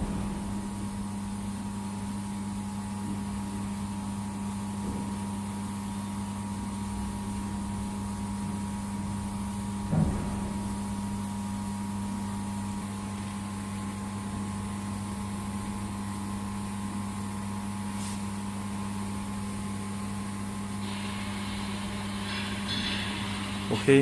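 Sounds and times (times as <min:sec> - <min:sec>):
low mains drone: 0:00.0 - 0:03.2
laser welding machine humming: 0:00.0 - 0:24.0.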